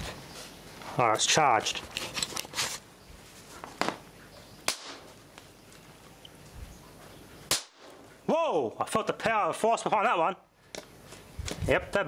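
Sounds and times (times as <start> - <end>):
battery popping bang: 4.7 - 5.1, 7.5 - 8.0.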